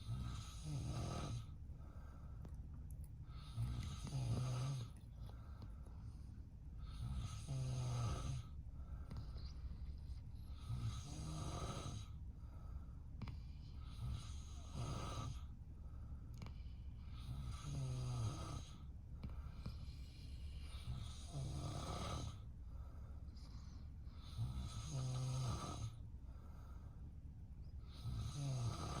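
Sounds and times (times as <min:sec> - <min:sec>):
man snoring: 0:00.0 - 0:01.5, 0:03.3 - 0:05.0, 0:06.8 - 0:08.6, 0:10.5 - 0:12.2, 0:13.8 - 0:15.5, 0:17.2 - 0:18.9, 0:20.7 - 0:22.4, 0:24.2 - 0:26.0, 0:27.9 - 0:29.0.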